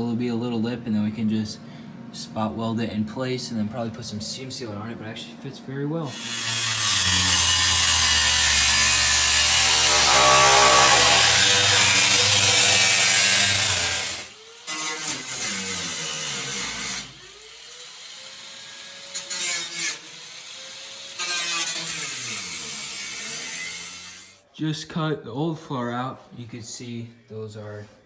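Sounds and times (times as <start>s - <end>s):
power tool cutting sheet metal: 6.1s - 24.4s.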